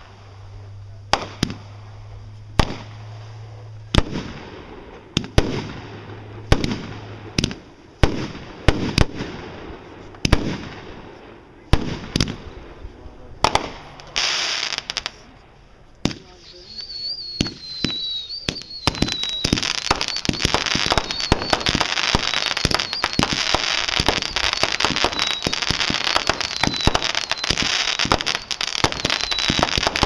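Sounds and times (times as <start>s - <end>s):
fireworks exploding: 0.0s - 30.0s
fireworks hissing burst: 16.2s - 30.0s.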